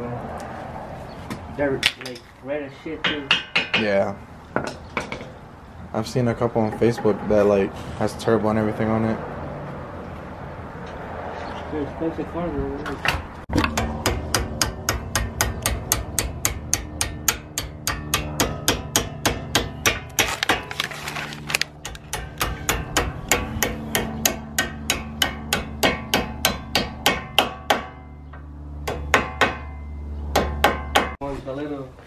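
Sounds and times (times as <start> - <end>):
hammer striking metal: 13.6 - 20.7, 21.8 - 28.2, 28.8 - 31.2.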